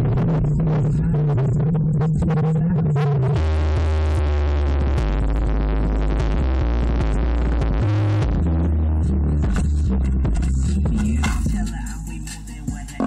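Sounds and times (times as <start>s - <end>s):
electronic dance music with heavy bass: 0.0s - 13.0s.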